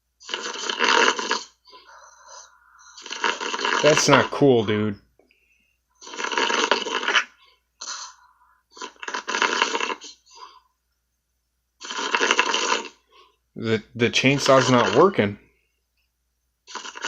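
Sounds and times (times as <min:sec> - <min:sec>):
man snoring: 0:00.2 - 0:04.6
breathing: 0:01.6 - 0:03.0, 0:05.2 - 0:06.0, 0:07.4 - 0:08.8, 0:10.2 - 0:10.8, 0:13.0 - 0:13.5, 0:15.4 - 0:15.9.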